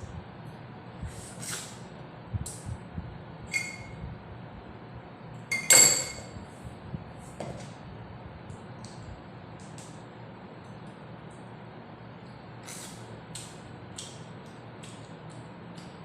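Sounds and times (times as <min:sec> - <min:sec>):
ringing clinks of hard objects: 0:03.5 - 0:03.9, 0:05.5 - 0:06.3.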